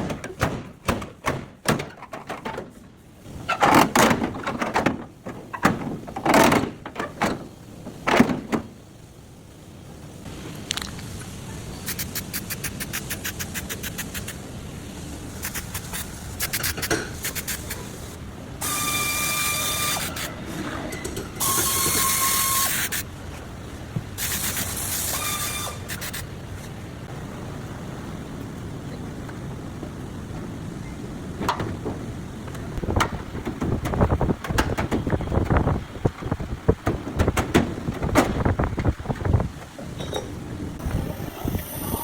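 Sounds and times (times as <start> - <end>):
power tool whining and hissing: 18.6 - 20.4, 21.4 - 23.0, 40.8 - 42.0
scattered knocks: 31.4 - 40.3.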